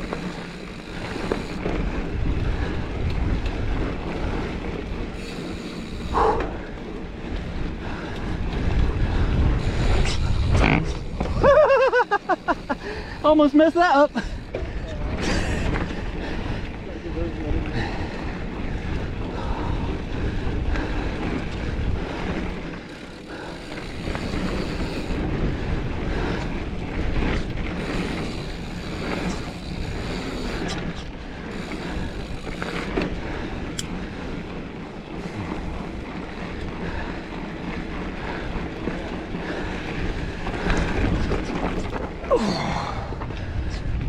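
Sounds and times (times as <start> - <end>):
bike clicks and rattles: 0.0 - 44.0
bike tyres rumbling on dirt: 0.0 - 44.0
wind buffeting microphone: 0.0 - 44.0.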